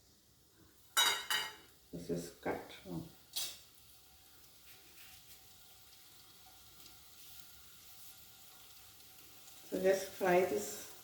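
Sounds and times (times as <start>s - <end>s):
okra sizzling in hot oil: 0.0s - 11.0s.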